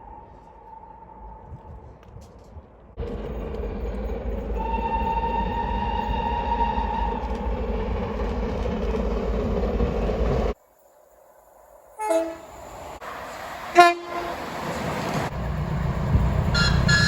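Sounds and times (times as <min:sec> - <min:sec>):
train rumbling past: 0:02.9 - 0:17.0
train horn blast: 0:04.6 - 0:07.4, 0:12.0 - 0:12.5, 0:13.7 - 0:14.5, 0:16.5 - 0:17.0.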